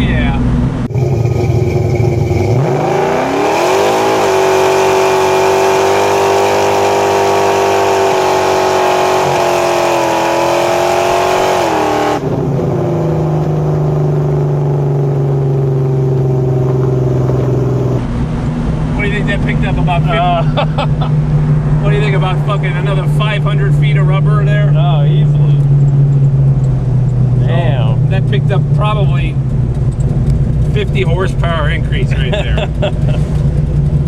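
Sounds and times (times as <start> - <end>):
engine revving at full throttle: 0.8 - 18.1.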